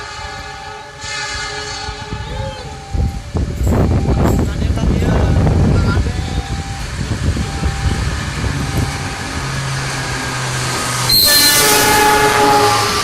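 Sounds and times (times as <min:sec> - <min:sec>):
train horn chord: 0:00.0 - 0:02.2, 0:11.0 - 0:13.0
locomotive hum: 0:00.0 - 0:13.0
train rushing past: 0:00.0 - 0:13.0.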